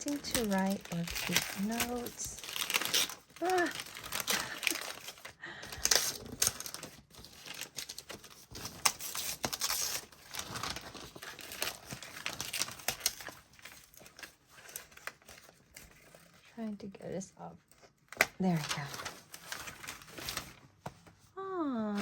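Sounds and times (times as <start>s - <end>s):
paper tearing: 0.0s - 16.4s
gift wrapping crinkling: 0.0s - 22.0s.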